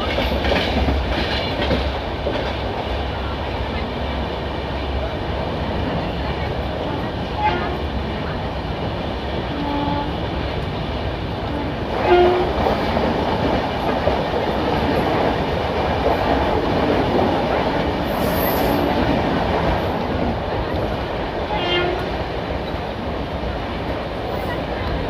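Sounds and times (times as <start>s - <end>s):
train rumbling along track: 0.0s - 25.0s.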